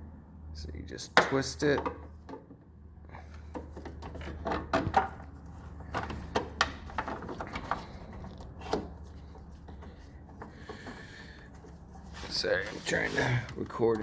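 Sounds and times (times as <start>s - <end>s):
plastic clicks and rubbing: 3.5s - 11.8s, 12.6s - 14.0s.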